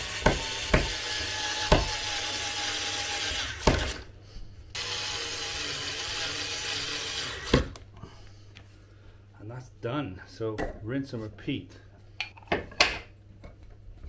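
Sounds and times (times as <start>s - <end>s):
screw grinding into wood: 4.8s - 7.8s.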